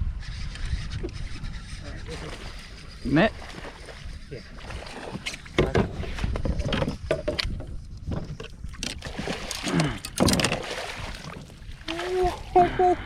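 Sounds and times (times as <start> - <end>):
water splashing: 2.0 - 6.2, 8.7 - 13.0.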